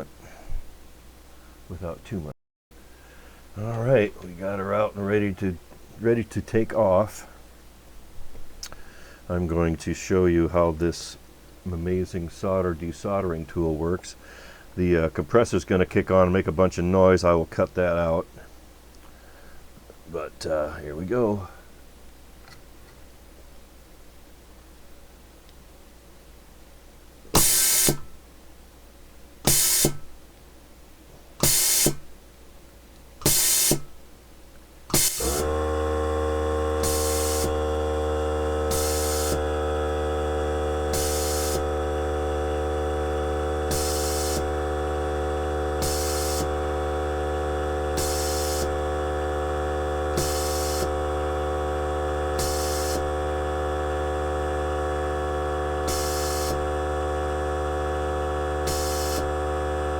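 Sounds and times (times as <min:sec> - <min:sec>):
desoldering tool hissing bursts: 0:27.3 - 0:28.2, 0:29.4 - 0:30.2, 0:31.4 - 0:32.1, 0:33.2 - 0:34.0, 0:34.9 - 0:59.9
air compressor humming: 0:27.3 - 0:28.3, 0:29.4 - 0:30.3, 0:31.2 - 0:32.2, 0:33.2 - 0:34.1, 0:34.8 - 0:59.9.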